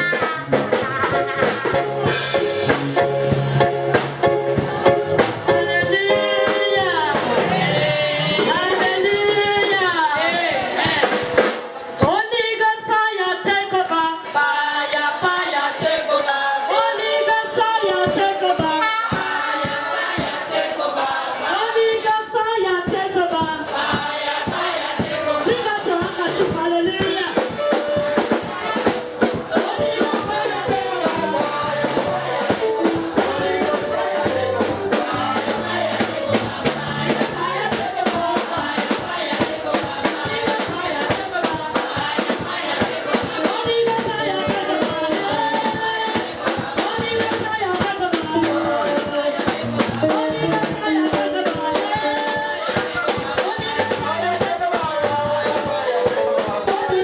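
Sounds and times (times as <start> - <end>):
bass line: 0.0 - 9.7, 30.3 - 37.7, 49.6 - 51.4
fast percussion strokes: 0.0 - 11.8, 14.3 - 21.8, 22.9 - 57.0
voices singing: 0.0 - 12.7, 13.3 - 57.0.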